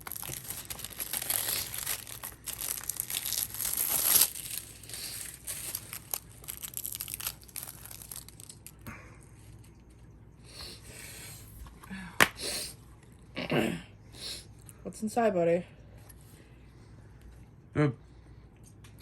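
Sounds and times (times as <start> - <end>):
plastic wrap tearing and crinkling: 0.0 - 8.8
faint crackles and clicks: 0.0 - 10.1.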